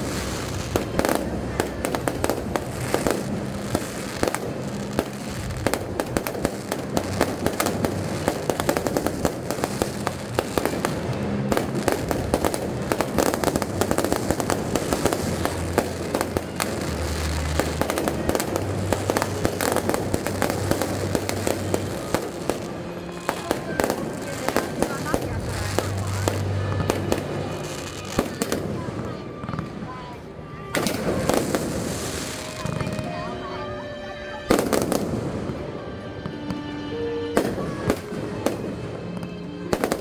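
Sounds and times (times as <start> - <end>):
fireworks bangs and crackling: 0.0 - 40.0
music with held low notes: 0.0 - 40.0.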